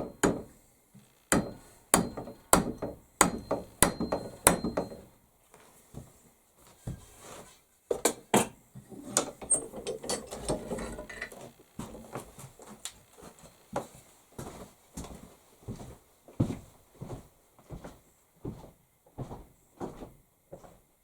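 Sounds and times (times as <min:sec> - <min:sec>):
hand tools clicking and knocking: 0:00.0 - 0:00.5, 0:01.3 - 0:05.1, 0:08.0 - 0:11.4.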